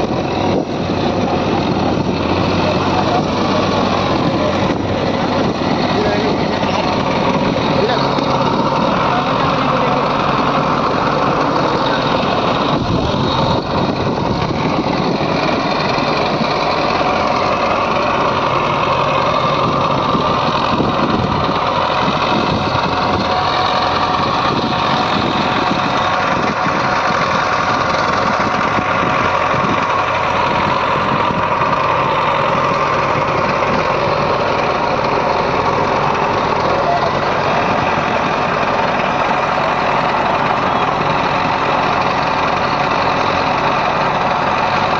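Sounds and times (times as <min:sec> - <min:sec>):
heavy machinery diesel engine running: 0:00.0 - 0:44.9.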